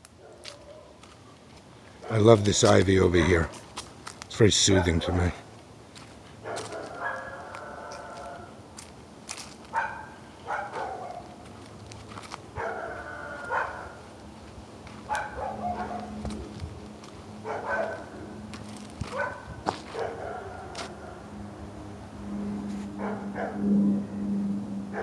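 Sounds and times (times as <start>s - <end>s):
dogs barking: 0.2s - 1.0s, 2.0s - 3.7s, 4.6s - 5.4s, 6.4s - 8.5s, 9.7s - 11.4s, 12.6s - 14.0s, 15.0s - 16.5s, 17.4s - 18.4s, 19.0s - 21.3s, 22.9s - 23.7s
low steady hum: 7.0s - 25.0s.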